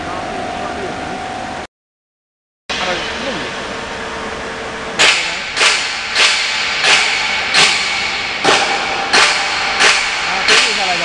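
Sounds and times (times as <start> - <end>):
steady machine noise: 0.0 - 1.7, 2.7 - 11.0
machinery sharp strikes with hiss: 5.0 - 11.0.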